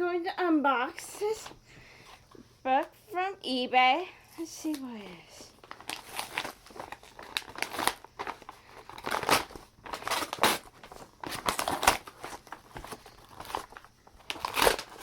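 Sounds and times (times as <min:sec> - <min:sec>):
package wrapping tearing and crinkling: 0:05.6 - 0:15.0.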